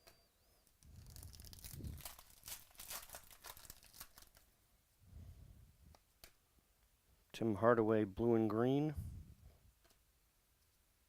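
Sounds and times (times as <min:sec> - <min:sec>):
wrapper tearing and crinkling: 0:00.8 - 0:04.5.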